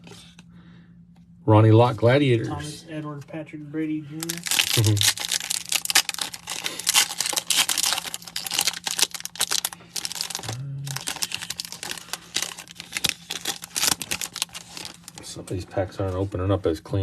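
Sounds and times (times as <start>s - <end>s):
wrapper tearing and crinkling: 4.2s - 15.4s.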